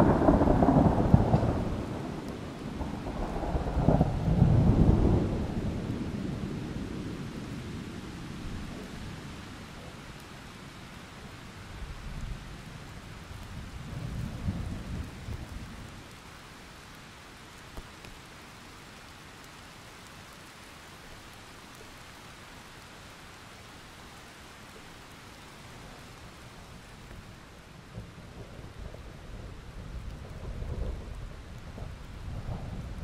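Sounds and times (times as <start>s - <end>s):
thunder rumbling: 0.0s - 9.4s, 13.4s - 16.0s, 27.8s - 33.0s
steady rain: 0.0s - 33.0s.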